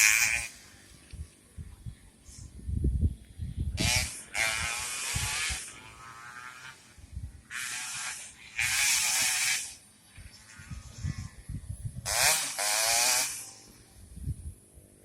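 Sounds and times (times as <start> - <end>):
racing motorcycles passing: 0.0 - 1.1, 3.8 - 14.2.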